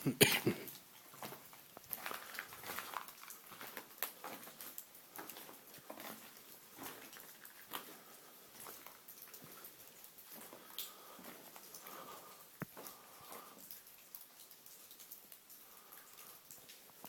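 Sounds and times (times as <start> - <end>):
footsteps on rocky ground: 1.1 - 9.7.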